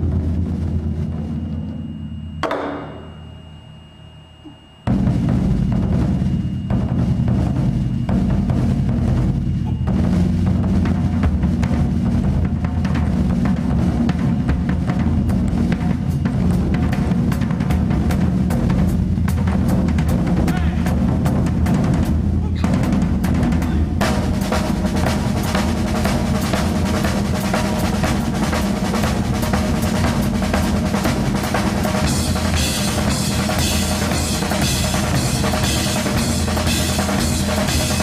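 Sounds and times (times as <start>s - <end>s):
drum kit playing: 0.0s - 3.4s, 4.9s - 38.0s
taiko drum: 0.0s - 3.7s, 4.8s - 38.0s
sharp cymbal hits: 0.3s - 11.2s, 23.6s - 38.0s.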